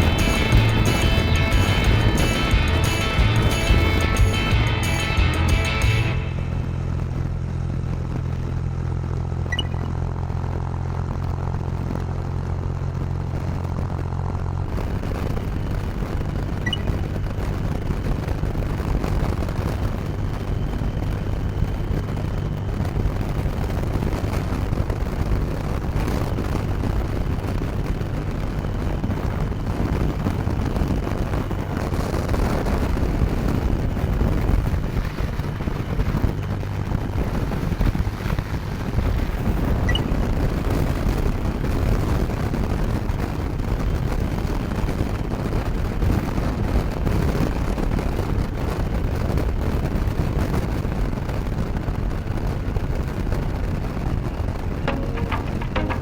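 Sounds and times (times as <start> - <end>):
wind noise on microphone: 0.0 - 4.6, 6.0 - 56.0.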